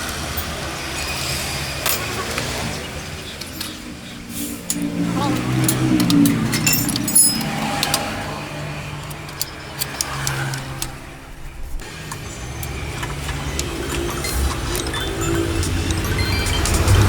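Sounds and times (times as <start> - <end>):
engine running: 0.0 - 17.0
sharp metallic clicks: 4.6 - 17.0.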